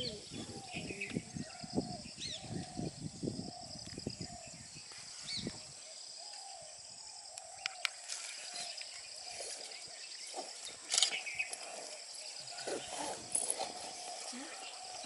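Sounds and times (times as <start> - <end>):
bird repeating low call: 0.0 - 4.6
high insect drone: 0.0 - 15.0.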